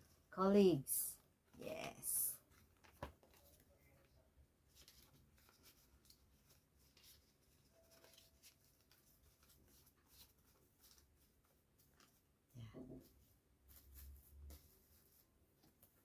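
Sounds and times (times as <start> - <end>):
paper rustling: 1.9 - 12.4.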